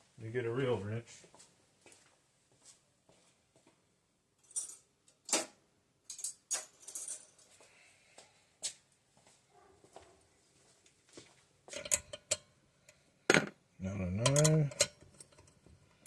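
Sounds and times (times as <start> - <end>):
metal tools clinking: 4.4 - 4.9, 6.1 - 7.5, 11.7 - 12.4, 14.1 - 15.6.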